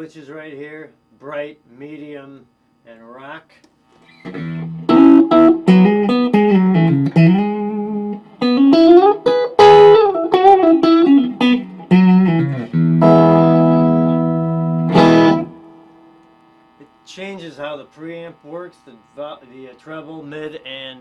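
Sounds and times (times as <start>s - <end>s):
clean electric guitar: 4.0s - 16.6s.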